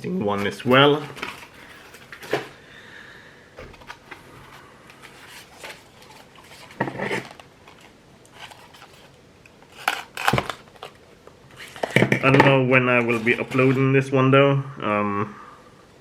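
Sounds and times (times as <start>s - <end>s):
louder clunks: 1.1s - 7.0s.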